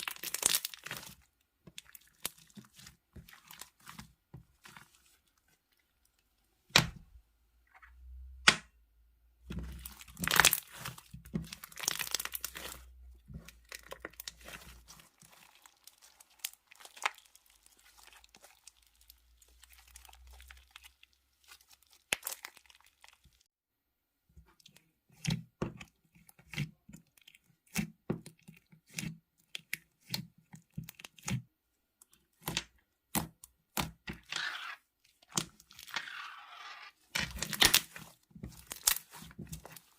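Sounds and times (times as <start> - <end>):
slime crackling and squelching: 0.0 - 7.2, 9.4 - 23.5, 24.5 - 39.9.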